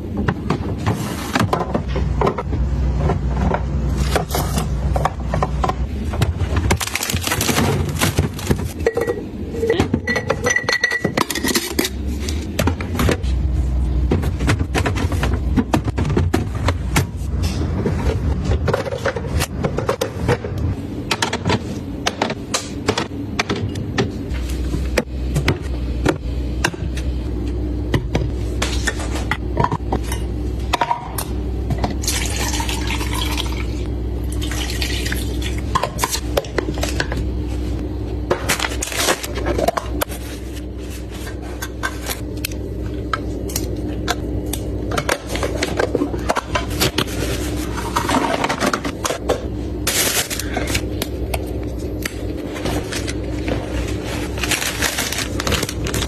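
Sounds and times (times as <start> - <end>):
steady low hum: 0.0 - 56.0
dishes and containers clinking: 7.4 - 12.0
running tap water: 34.3 - 35.6.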